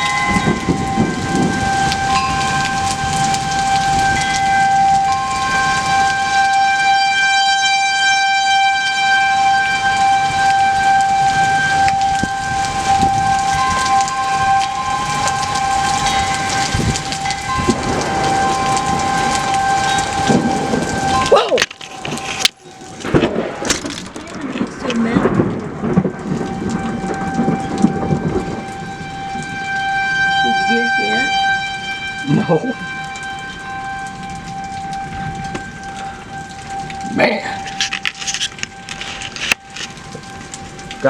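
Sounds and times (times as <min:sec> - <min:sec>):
thunder crack and rumbling: 0:00.0 - 0:07.8, 0:09.0 - 0:41.0
heavy rain: 0:00.0 - 0:41.0
steady high tone: 0:29.9 - 0:39.7.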